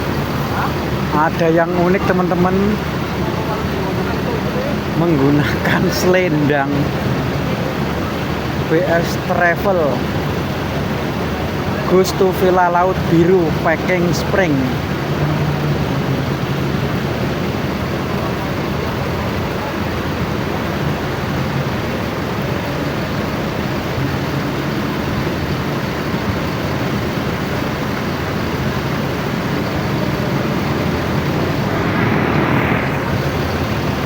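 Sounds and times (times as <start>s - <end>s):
diesel engines running: 0.0s - 34.0s
even hiss: 30.3s - 34.0s.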